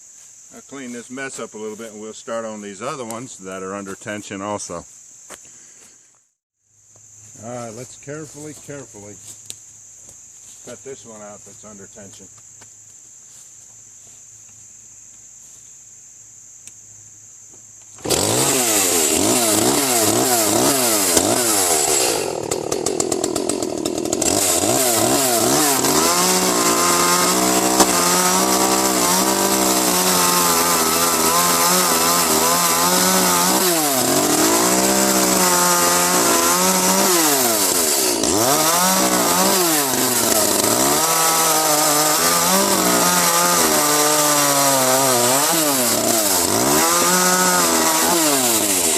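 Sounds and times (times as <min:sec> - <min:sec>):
crickets chirring: 0:00.0 - 0:48.8
chainsaw cutting wood: 0:17.8 - 0:48.9.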